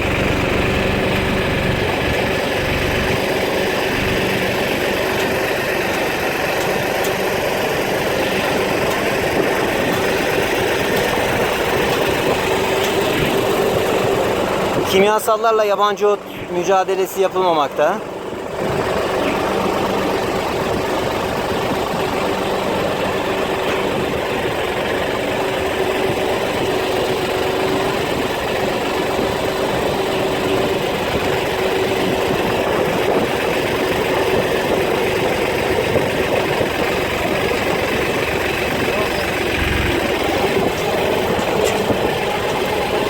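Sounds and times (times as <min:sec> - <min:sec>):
motor humming: 0:32.0 - 0:43.0.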